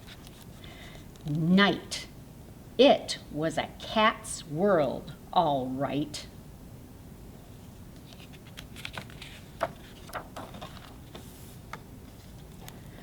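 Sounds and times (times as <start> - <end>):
book page turning: 8.0 - 12.6
paper rustling: 8.0 - 12.7.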